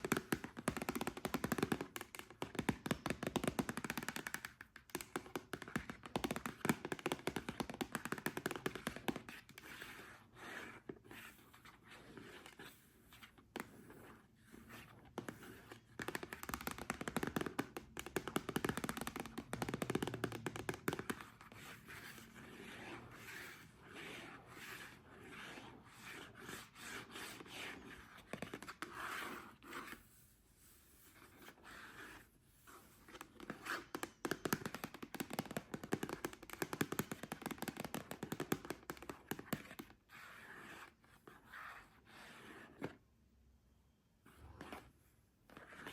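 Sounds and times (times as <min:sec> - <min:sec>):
fingernails tapping on a surface: 0:16.0 - 0:21.2.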